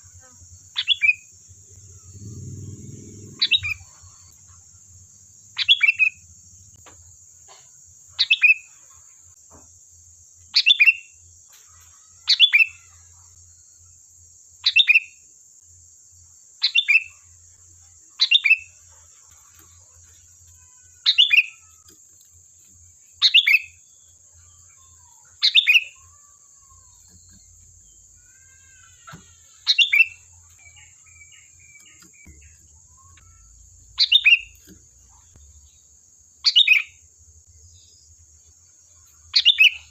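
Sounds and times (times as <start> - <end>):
bird chirping calls: 0.0 - 4.6, 5.5 - 6.2, 8.1 - 8.8, 11.7 - 13.3, 16.6 - 17.3, 18.2 - 18.8, 19.5 - 22.0, 23.2 - 37.0, 39.0 - 39.9
faint bird twitters: 0.0 - 4.8, 5.5 - 6.2, 23.2 - 35.7.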